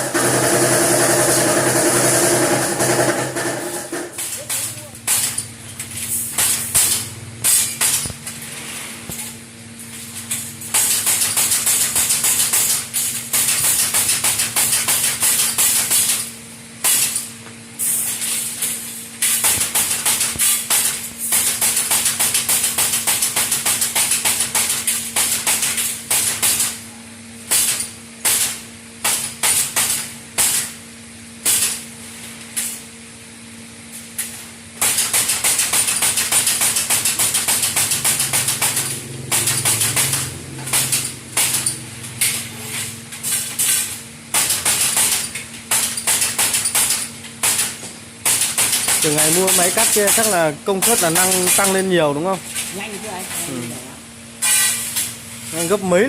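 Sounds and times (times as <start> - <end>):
steady electrical hum: 0.0 - 56.0
machinery crackling clicks: 34.8 - 47.7, 48.3 - 51.9.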